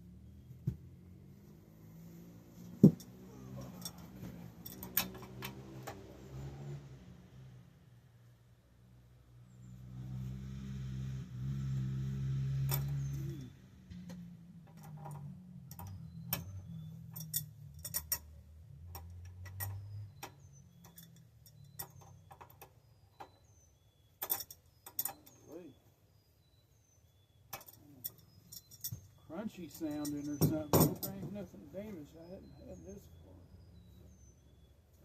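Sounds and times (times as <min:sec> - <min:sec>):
metal tools clinking: 0:02.8 - 0:05.9, 0:14.6 - 0:18.3, 0:18.9 - 0:23.4, 0:24.2 - 0:25.6, 0:27.5 - 0:33.2
bearing crunching: 0:27.5 - 0:33.1.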